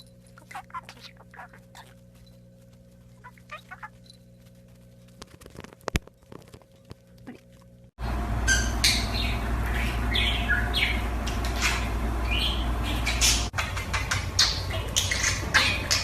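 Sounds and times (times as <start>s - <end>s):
steady low hum: 0.0s - 16.0s
bird chirping: 3.1s - 4.3s, 8.4s - 16.0s.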